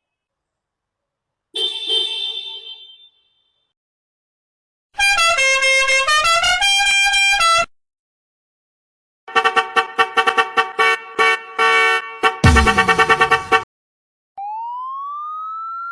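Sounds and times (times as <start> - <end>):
car horn tooting: 1.6 - 3.2, 5.0 - 7.7, 9.3 - 13.6
musical horn playing a tune: 5.0 - 7.7.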